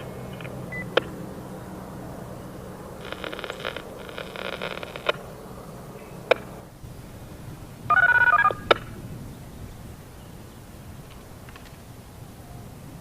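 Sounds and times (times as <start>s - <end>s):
paired dtmf tones: 0.0s - 1.1s, 3.0s - 5.3s, 7.9s - 8.9s
radio squelch clicks: 0.0s - 1.2s, 3.0s - 5.3s, 6.2s - 6.6s
buzzy radio burst: 3.0s - 6.7s.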